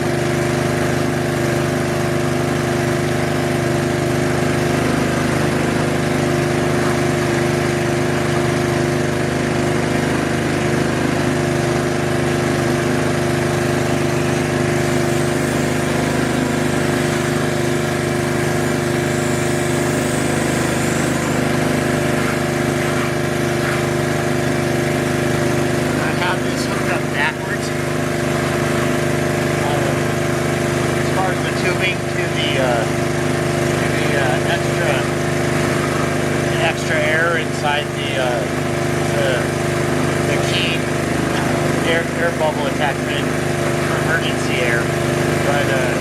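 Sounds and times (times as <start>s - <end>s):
small gasoline engine running: 0.0s - 46.0s.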